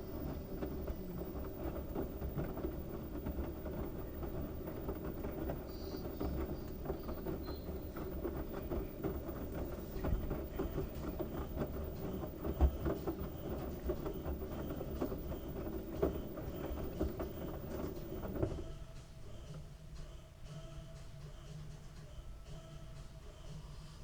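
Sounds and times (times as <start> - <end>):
washing machine drum rumbling: 0.0 - 19.0
quiet machine hum: 0.0 - 24.0.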